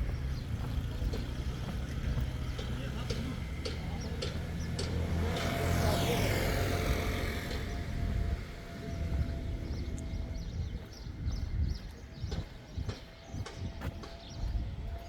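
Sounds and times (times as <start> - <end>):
vehicle driving past: 0.0 - 10.6
low rumble: 6.5 - 15.0.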